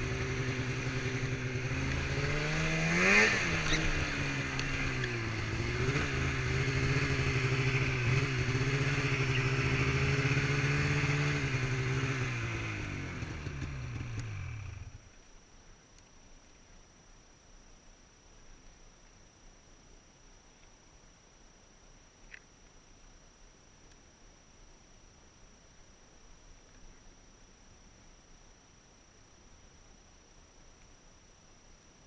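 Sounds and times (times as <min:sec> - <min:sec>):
snowmobile engine revving: 0:00.0 - 0:14.9.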